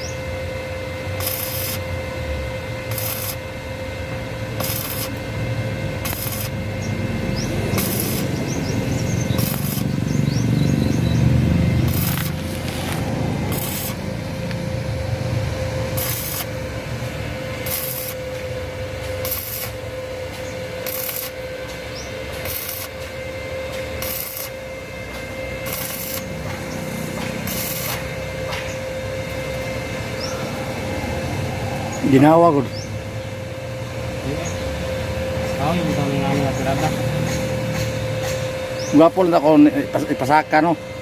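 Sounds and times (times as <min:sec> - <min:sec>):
steady mechanical hum: 0:00.0 - 0:41.0
hand tool rasping strokes: 0:01.2 - 0:02.0, 0:02.8 - 0:03.6, 0:04.5 - 0:05.3, 0:05.9 - 0:14.7, 0:15.8 - 0:28.8.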